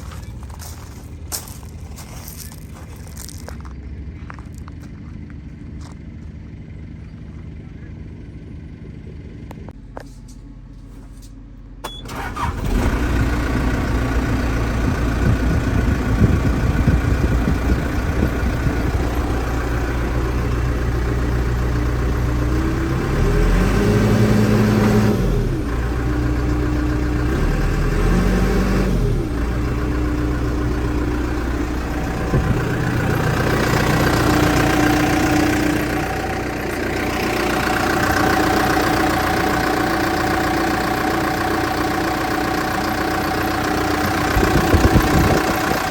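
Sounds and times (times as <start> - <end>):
diesel engine starting and idling: 0.0 - 45.9
engine revving: 12.1 - 45.9.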